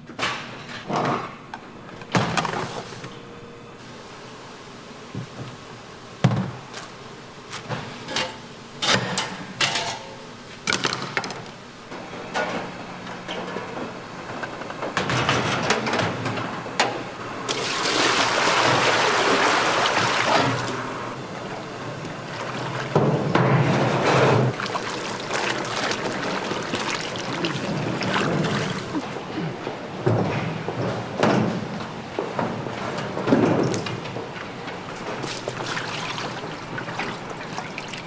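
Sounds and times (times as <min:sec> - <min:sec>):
liquid pouring: 0:24.5 - 0:29.0.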